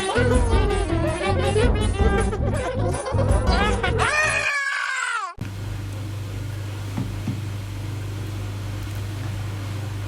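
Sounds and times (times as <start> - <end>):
low hum with hiss: 5.4 - 10.0.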